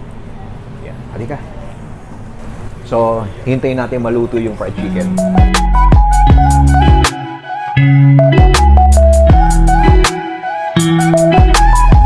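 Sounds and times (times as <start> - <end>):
music with steady beat: 4.8 - 12.0.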